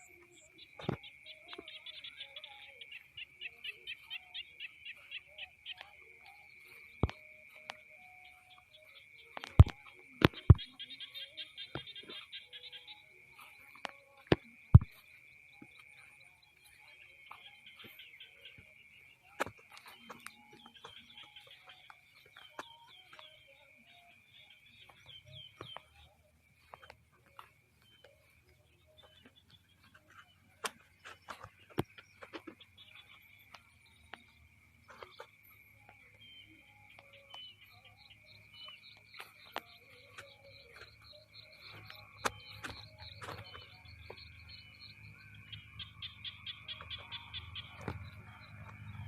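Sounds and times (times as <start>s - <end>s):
quick chirps: 0.0s - 49.0s.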